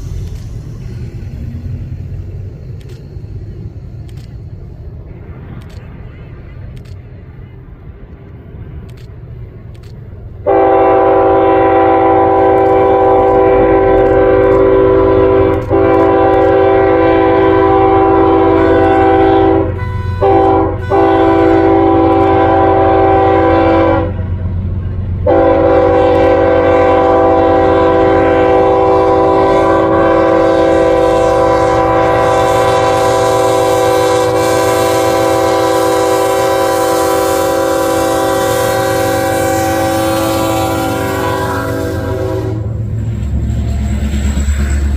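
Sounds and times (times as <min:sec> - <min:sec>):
hiss: 0:00.0 - 0:04.8
low engine rumble: 0:00.0 - 0:44.9
locomotive air horn chord: 0:10.4 - 0:24.2, 0:25.2 - 0:43.0.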